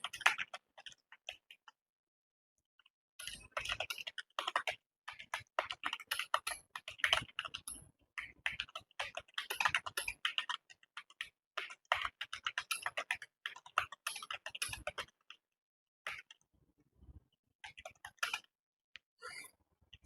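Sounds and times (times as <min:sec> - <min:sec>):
keyboard typing: 0:03.2 - 0:15.4, 0:17.6 - 0:18.5.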